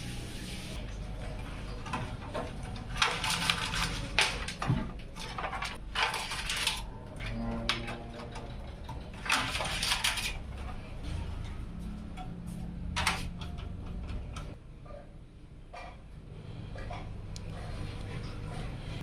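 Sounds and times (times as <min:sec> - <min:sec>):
rustling and scraping of parts: 0:00.6 - 0:15.1.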